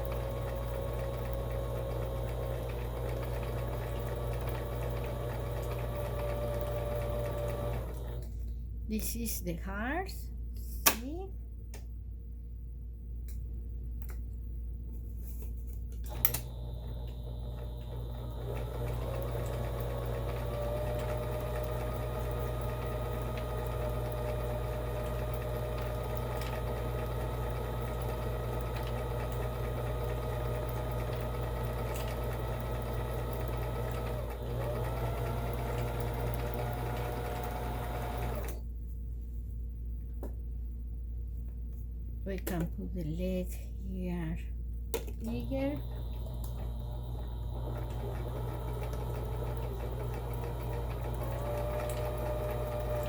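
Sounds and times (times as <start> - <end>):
sewing machine motor running: 0.0 - 8.2, 16.1 - 38.6, 45.3 - 53.0.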